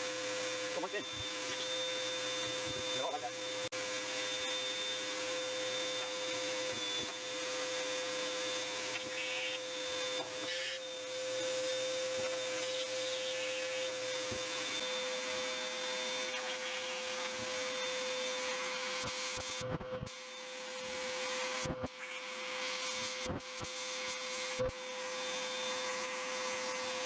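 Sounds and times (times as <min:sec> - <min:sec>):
shop vacuum whining: 0:00.0 - 0:27.0.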